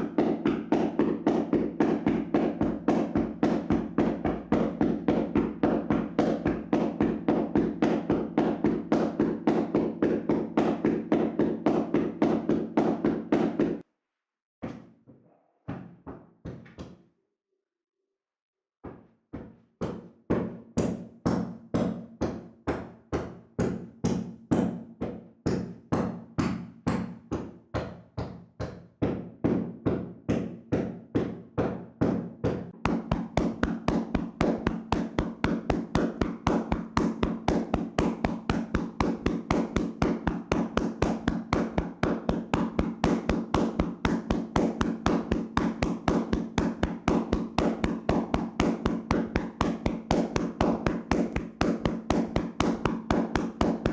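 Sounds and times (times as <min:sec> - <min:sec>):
hands slapping on body: 0:32.8 - 0:53.9.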